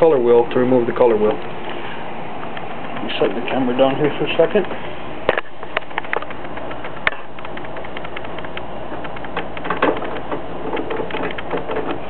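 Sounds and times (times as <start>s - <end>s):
camera knocking on surface: 5.3s - 12.0s.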